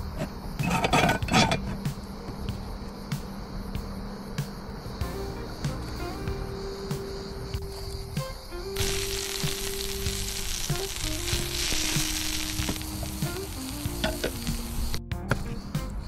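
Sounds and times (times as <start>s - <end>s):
background music with held notes: 1.2s - 16.0s
food sizzling in a pan: 8.8s - 15.0s.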